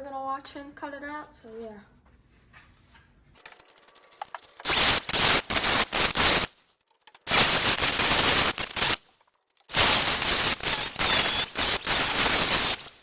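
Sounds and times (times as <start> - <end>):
power tool cutting sheet metal: 4.6 - 6.5, 7.3 - 9.0, 9.7 - 13.0.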